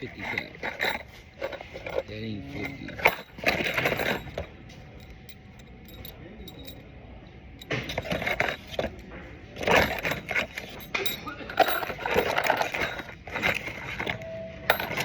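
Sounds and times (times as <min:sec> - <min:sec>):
metal screws rattling in a box: 0:00.0 - 0:06.8, 0:07.6 - 0:09.0, 0:09.6 - 0:15.0.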